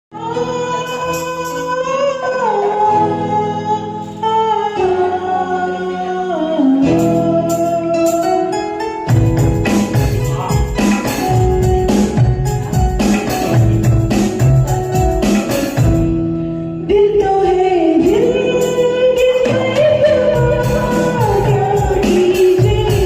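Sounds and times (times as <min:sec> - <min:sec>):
percussion beat: 0:09.1 - 0:16.2, 0:18.6 - 0:23.0.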